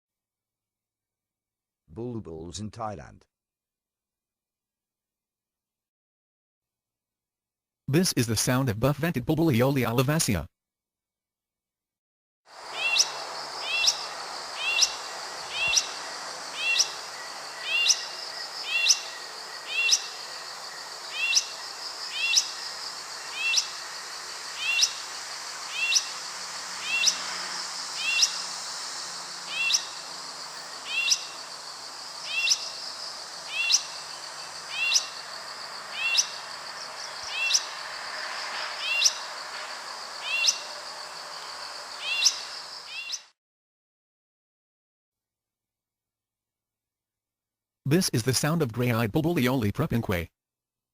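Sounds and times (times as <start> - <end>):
high background hiss: 12.5 - 43.0
bird calling sharply: 12.7 - 20.2, 21.1 - 22.6, 23.3 - 23.8, 24.6 - 25.1, 25.7 - 26.2, 28.0 - 28.5, 29.4 - 32.8, 33.5 - 35.2, 35.9 - 36.4, 42.0 - 43.3.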